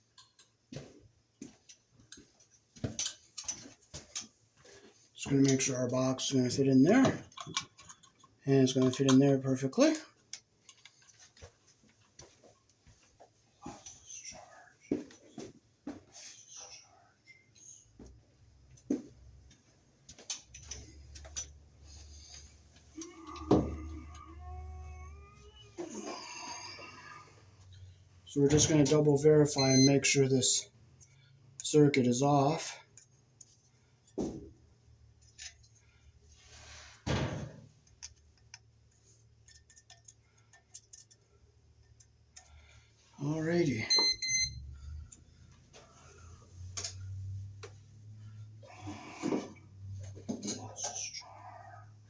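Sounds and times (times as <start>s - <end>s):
tools clicking and tapping: 0.0s - 4.4s, 7.0s - 9.3s, 10.2s - 11.6s, 37.8s - 42.5s.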